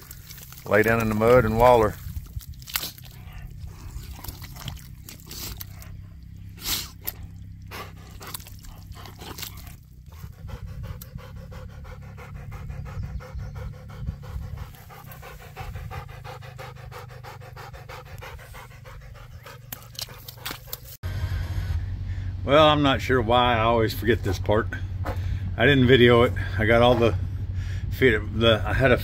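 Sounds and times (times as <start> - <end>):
dog panting fast: 6.8 - 21.0.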